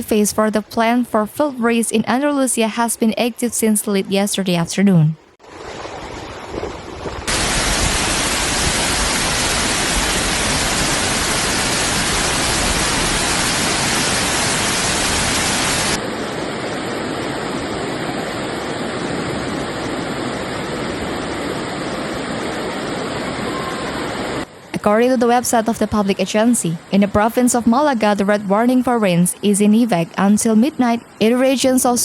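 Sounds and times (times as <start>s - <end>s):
water rushing: 5.4s - 26.7s.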